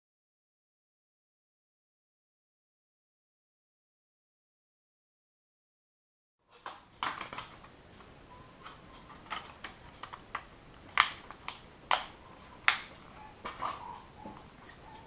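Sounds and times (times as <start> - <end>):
small hard parts clicking: 8.7 - 14.0.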